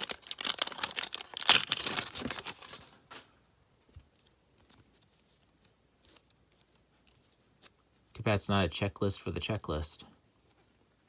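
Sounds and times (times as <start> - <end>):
card wrapper crinkling and tearing: 0.0 - 3.2.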